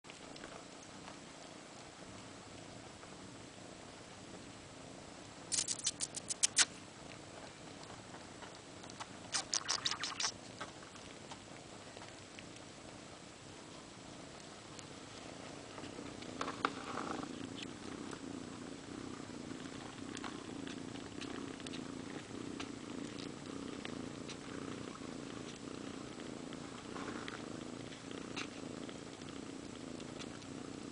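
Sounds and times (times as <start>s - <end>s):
cat purring: 0.1s - 30.9s
small clicks: 5.5s - 6.7s.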